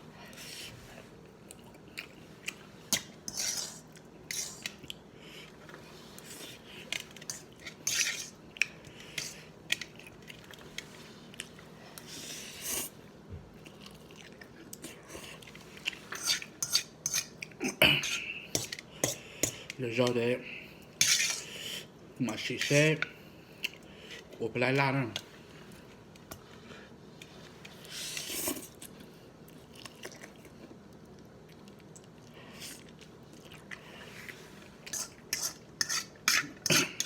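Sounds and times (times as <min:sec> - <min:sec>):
chewing: 0:01.4 - 0:03.1, 0:13.6 - 0:17.6, 0:27.2 - 0:35.2
utensil scraping a bowl: 0:03.3 - 0:04.7, 0:07.3 - 0:08.4, 0:21.0 - 0:21.5, 0:34.9 - 0:37.0.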